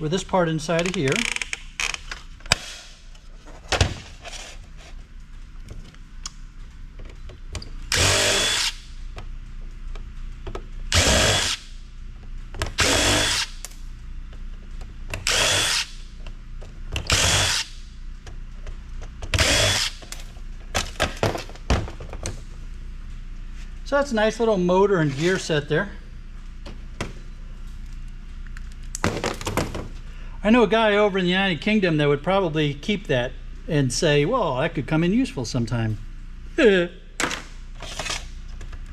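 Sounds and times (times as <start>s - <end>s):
power drill whining: 7.9s - 8.8s, 10.9s - 11.6s, 12.8s - 13.5s, 15.2s - 15.9s.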